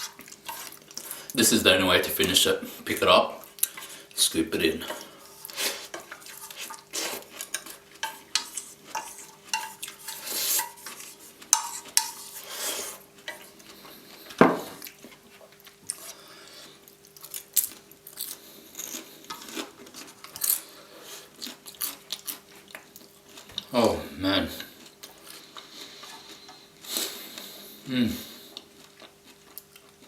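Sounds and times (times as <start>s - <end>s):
cutlery scraping on a plate: 4.8s - 13.5s.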